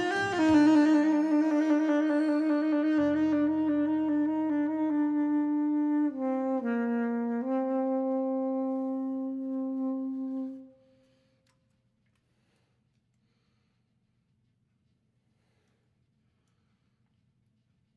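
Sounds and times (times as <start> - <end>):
wind instrument holding notes: 0.0 - 10.8.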